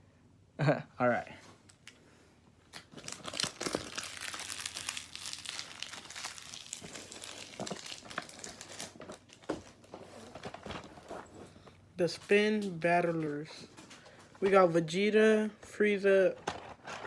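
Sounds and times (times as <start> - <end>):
packaging crinkling and rustling: 2.7 - 14.7, 16.3 - 17.0.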